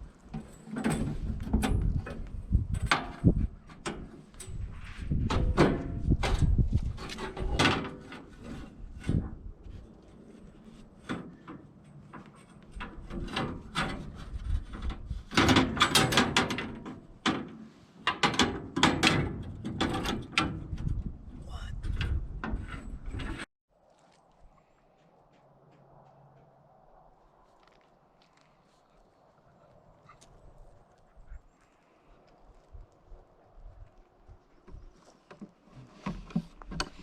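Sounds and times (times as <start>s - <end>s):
knocks and clunks of metal parts: 0.3s - 9.5s, 10.4s - 23.5s.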